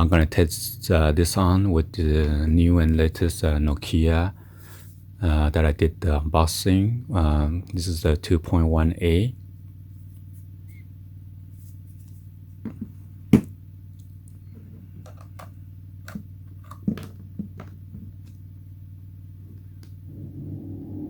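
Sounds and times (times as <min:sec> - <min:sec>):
steady low hum: 0:00.0 - 0:21.0
plastic cable clicks and knocks: 0:15.0 - 0:18.4.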